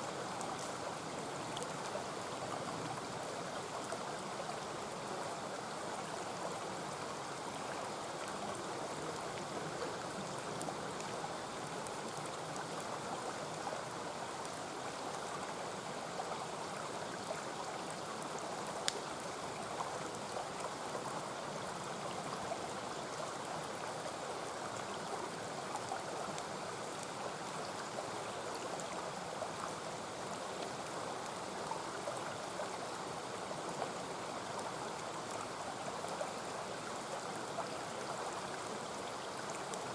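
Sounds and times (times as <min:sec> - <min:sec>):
faint sharp clicks: 0:00.4 - 0:00.8, 0:18.8 - 0:19.0.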